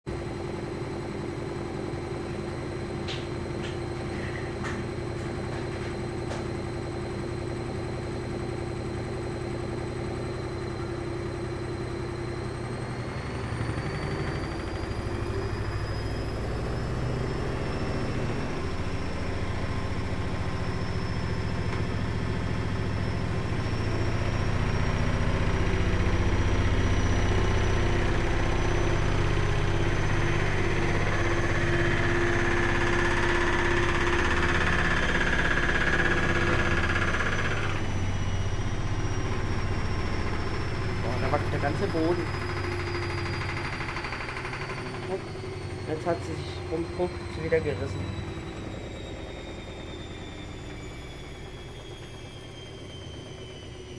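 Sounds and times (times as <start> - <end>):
washing machine motor whine: 0.1 - 53.9.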